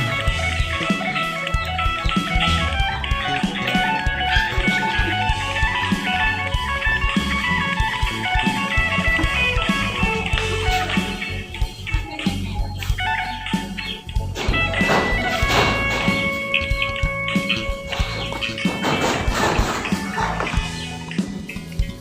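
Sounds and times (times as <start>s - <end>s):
electric guitar music: 0.0s - 22.0s
low bass notes: 0.0s - 22.0s.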